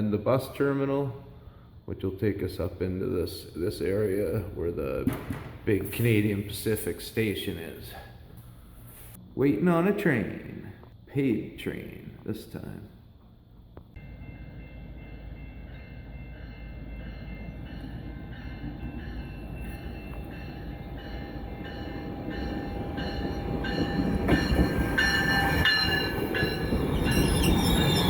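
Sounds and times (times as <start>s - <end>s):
train rumble: 11.7s - 28.0s
high metallic squealing: 24.4s - 28.0s.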